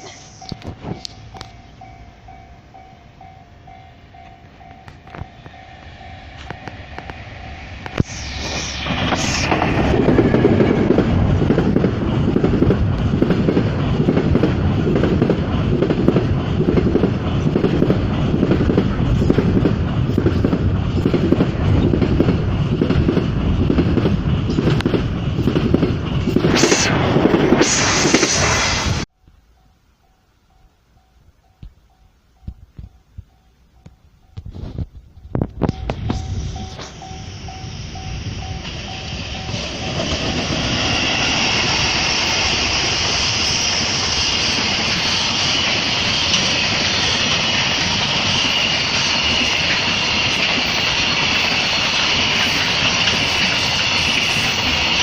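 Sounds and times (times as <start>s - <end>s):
level crossing warning bell: 0.0s - 8.1s, 29.4s - 40.7s
train passing: 0.0s - 55.0s.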